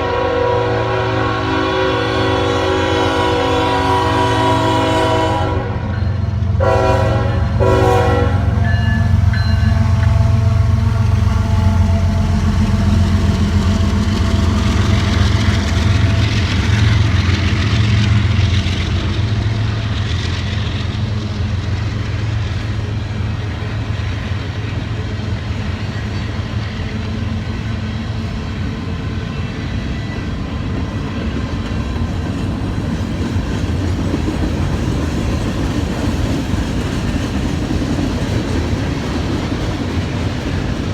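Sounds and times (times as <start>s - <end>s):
locomotive air horn: 0.0s - 6.0s, 6.6s - 8.8s
train engine rumble: 0.0s - 40.9s
train wheel noise: 0.0s - 40.9s.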